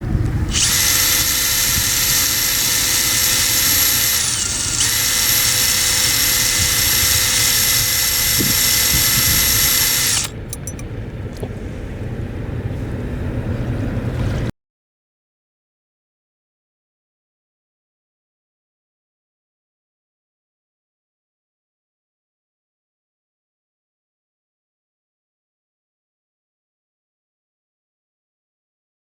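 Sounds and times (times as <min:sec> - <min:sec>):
clicks: 0:00.2 - 0:11.5
power drill motor whine: 0:00.4 - 0:10.8.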